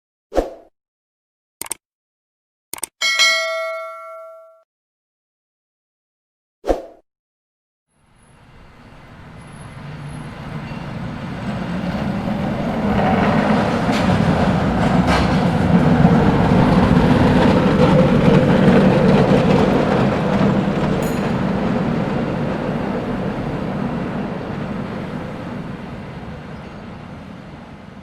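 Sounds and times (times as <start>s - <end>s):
cable car rumbling: 8.0s - 28.0s.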